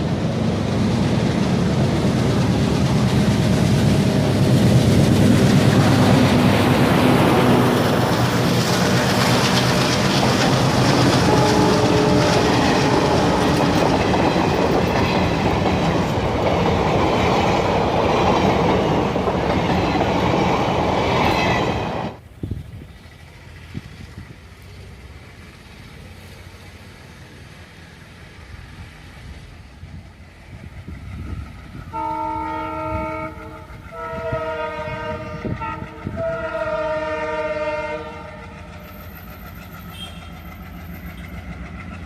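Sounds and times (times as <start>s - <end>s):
diesel locomotive engine chugging: 0.0s - 42.0s
train wheels clattering on track: 0.0s - 42.0s.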